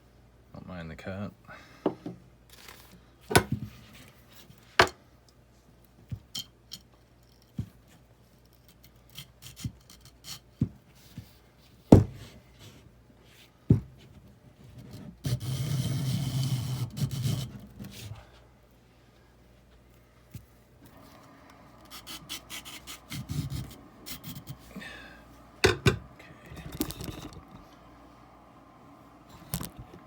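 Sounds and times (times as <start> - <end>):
wire brush scraping metal tube: 15.2 - 18.0, 21.8 - 24.7.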